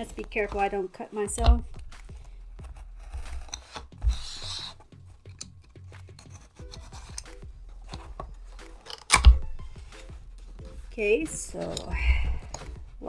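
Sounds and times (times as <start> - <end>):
utility knife slitting cardboard: 0.0 - 9.3
box handling clicks and rustles: 0.0 - 13.0.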